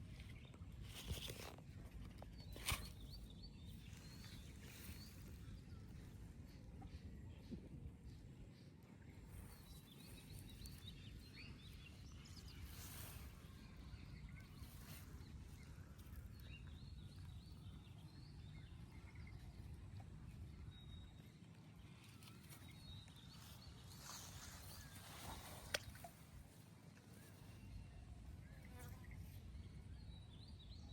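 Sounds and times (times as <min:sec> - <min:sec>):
soft rustles: 0:00.0 - 0:03.1
faint bird chirps: 0:27.1 - 0:30.9.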